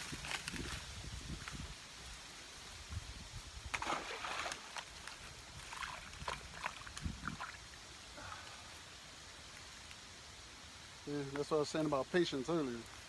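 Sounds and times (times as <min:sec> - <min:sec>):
water splashing and sloshing: 0:03.6 - 0:07.9.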